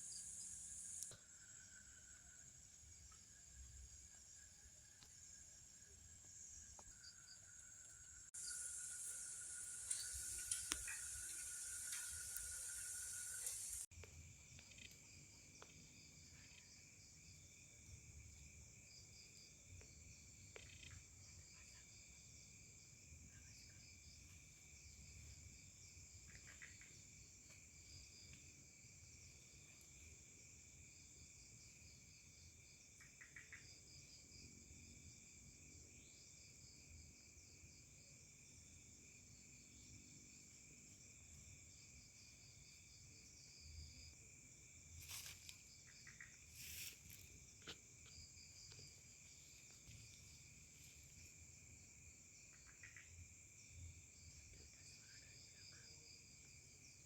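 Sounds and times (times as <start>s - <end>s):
short insect chirps: 0.0s - 3.9s, 6.3s - 13.9s, 44.9s - 51.4s
crickets trilling: 0.0s - 57.0s.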